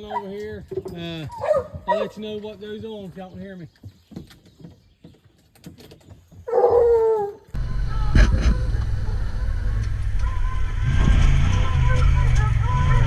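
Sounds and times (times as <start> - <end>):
hound baying: 0.0 - 0.5, 1.3 - 2.3, 6.5 - 7.6
steady low rumble: 7.6 - 13.0.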